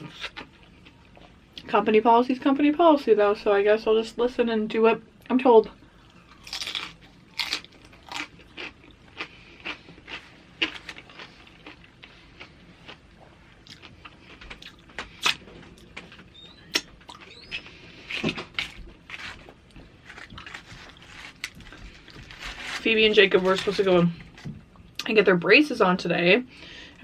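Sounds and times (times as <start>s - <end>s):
chewing crunchy chips: 5.9s - 25.0s.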